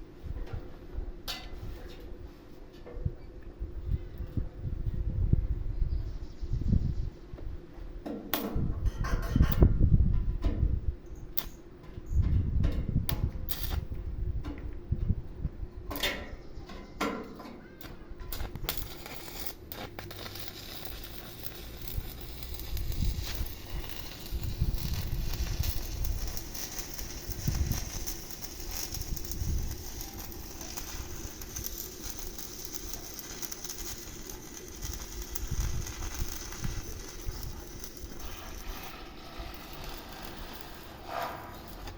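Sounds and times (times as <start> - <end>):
welding arc crackling and hissing: 13.4 - 14.0, 17.8 - 41.9
low rumbles: 19.9 - 41.9.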